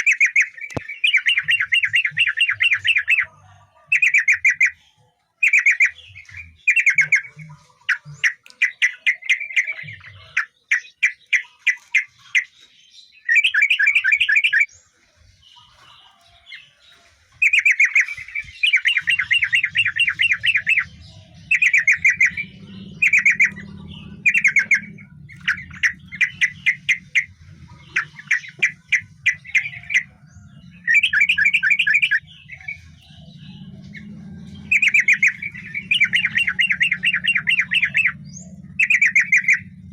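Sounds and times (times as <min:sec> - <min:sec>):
bird chattering song: 0:00.0 - 0:39.9
faint low hum: 0:18.1 - 0:39.9.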